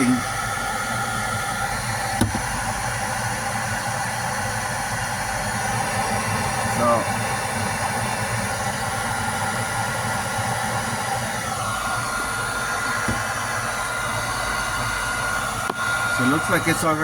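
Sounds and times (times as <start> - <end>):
hair dryer blowing: 0.0 - 17.0
steady high whistle: 13.7 - 17.0.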